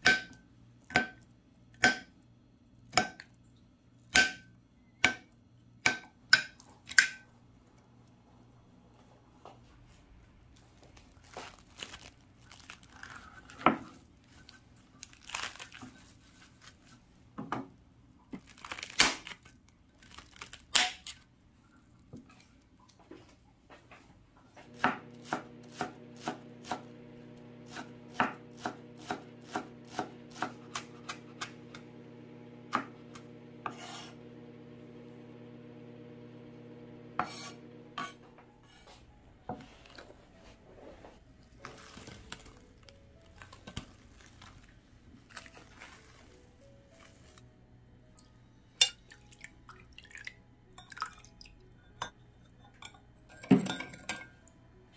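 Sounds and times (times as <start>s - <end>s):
knife chopping on cutting board: 24.7s - 26.9s, 27.6s - 31.8s, 32.7s - 34.2s, 37.2s - 38.8s
low hum: 30.9s - 38.5s.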